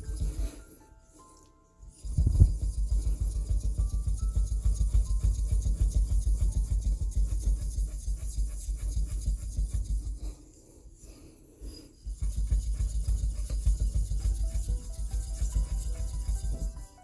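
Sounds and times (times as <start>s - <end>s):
whetstone rubbing on plate: 12.1s - 17.0s.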